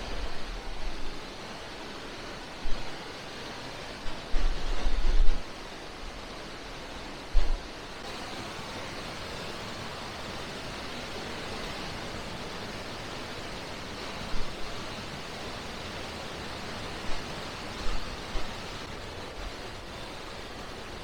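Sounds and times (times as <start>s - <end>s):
steady outdoor rushing noise: 0.0s - 21.0s.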